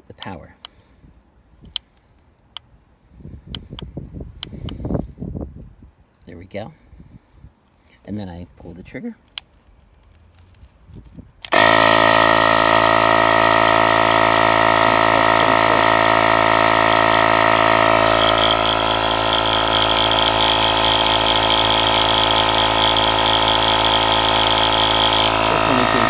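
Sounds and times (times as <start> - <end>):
tire inflator compressor running: 11.4 - 26.0
higher whine: 11.5 - 26.0.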